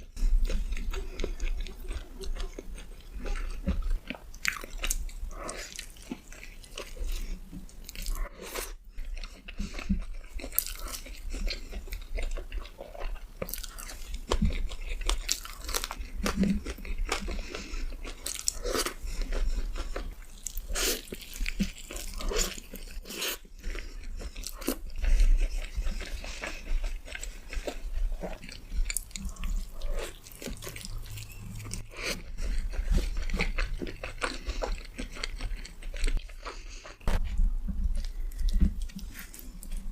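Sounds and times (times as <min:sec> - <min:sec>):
crunchy food chewing: 0:00.0 - 0:39.9.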